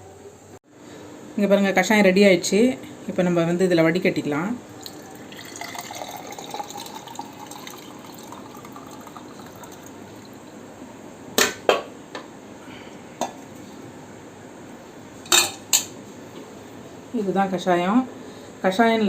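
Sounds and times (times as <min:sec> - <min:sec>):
liquid trickling into a cup: 0:04.8 - 0:10.5.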